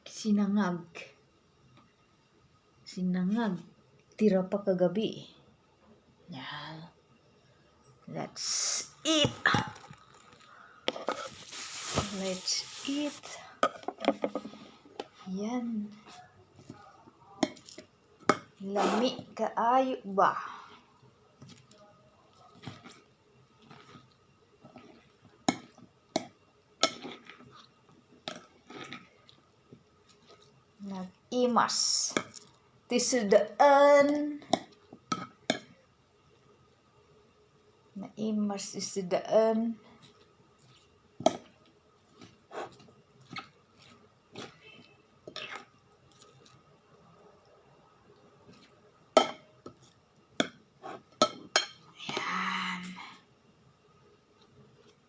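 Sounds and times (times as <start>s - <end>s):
chewing: 22.4s - 25.1s, 28.4s - 29.4s
mouth sounds while eating: 44.4s - 45.8s
cutlery tapping on a plate: 49.2s - 49.4s, 51.2s - 51.8s.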